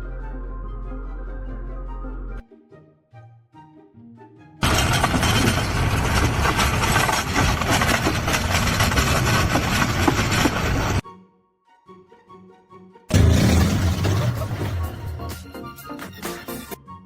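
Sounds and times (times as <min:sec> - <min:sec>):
loud engine running: 0:04.6 - 0:11.0, 0:13.1 - 0:15.2.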